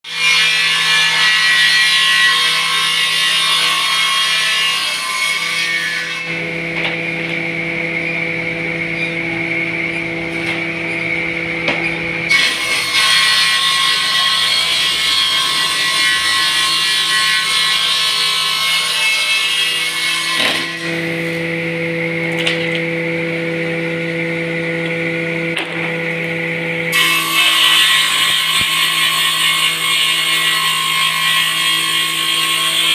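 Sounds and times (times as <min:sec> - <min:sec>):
saw blade cutting wood: 0:00.1 - 0:07.4, 0:08.9 - 0:21.5, 0:26.9 - 0:32.9
table saw motor hum: 0:04.8 - 0:32.9.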